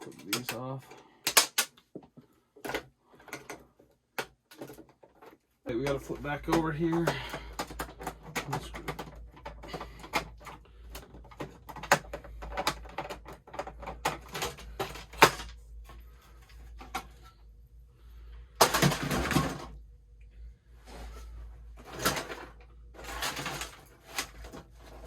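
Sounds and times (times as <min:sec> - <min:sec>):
typewriter parts clicking and knocking: 0:00.0 - 0:01.8, 0:05.8 - 0:15.5.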